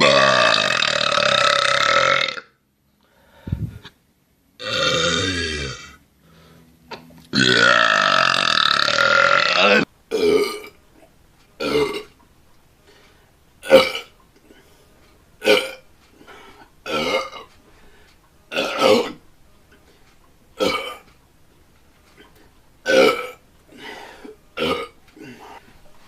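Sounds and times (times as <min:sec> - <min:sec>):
person belching: 0:00.0 - 0:02.6, 0:04.6 - 0:06.0, 0:07.3 - 0:10.7, 0:11.6 - 0:12.2, 0:13.6 - 0:14.2, 0:15.4 - 0:15.8, 0:16.8 - 0:17.5, 0:18.5 - 0:19.2, 0:20.6 - 0:21.1, 0:22.8 - 0:25.6.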